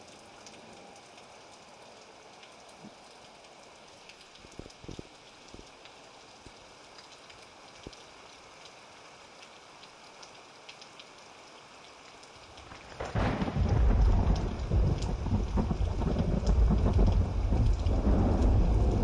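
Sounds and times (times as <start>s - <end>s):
light rain with drips: 0.0s - 19.0s
thunder clap and rolling rumble: 12.9s - 19.0s.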